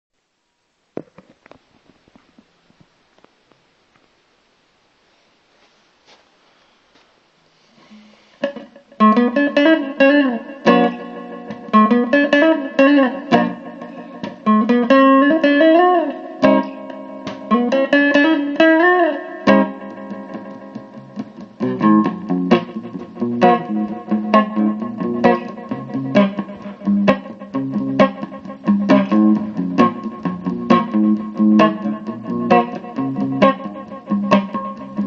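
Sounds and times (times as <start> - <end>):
electric guitar chords: 8.4 - 35.0.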